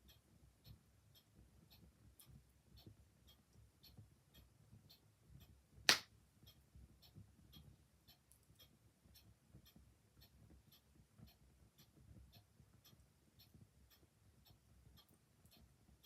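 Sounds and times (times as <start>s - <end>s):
clock ticking: 0.0s - 16.0s.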